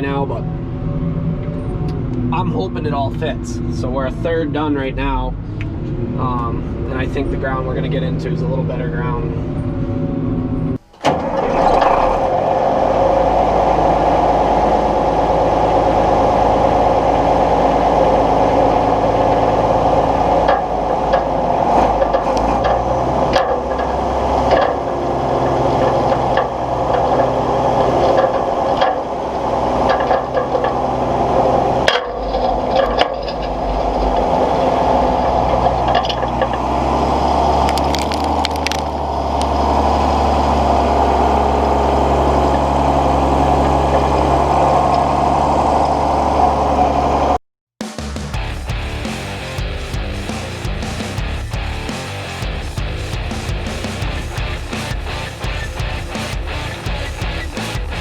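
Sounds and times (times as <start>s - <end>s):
tractor engine running: 0.0s - 47.4s, 48.2s - 58.0s
machinery cracks and rattles: 18.1s - 39.5s.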